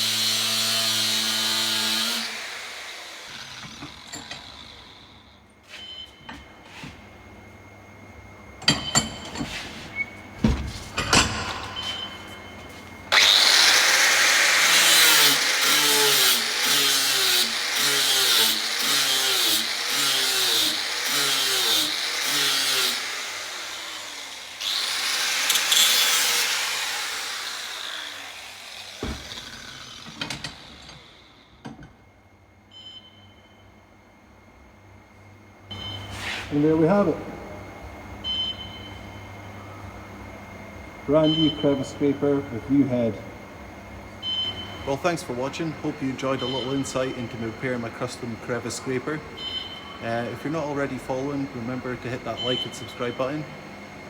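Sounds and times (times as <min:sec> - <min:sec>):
electric grinder grinding metal: 0:00.0 - 0:05.2, 0:13.1 - 0:31.4.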